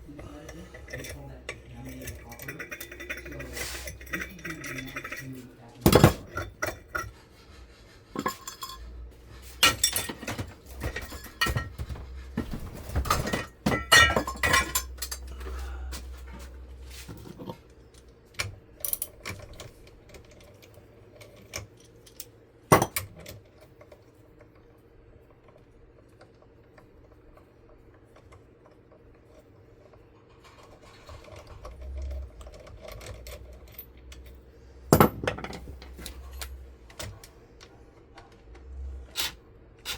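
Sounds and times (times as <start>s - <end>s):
tools clinking on metal: 0.5s - 7.1s, 8.2s - 8.9s, 9.6s - 12.0s, 13.1s - 15.6s.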